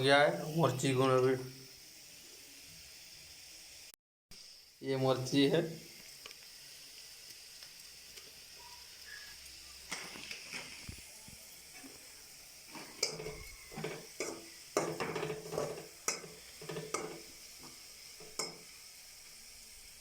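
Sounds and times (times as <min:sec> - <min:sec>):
onions sizzling in hot oil: 0:00.0 - 0:20.0
spatula scraping pan: 0:11.7 - 0:18.7.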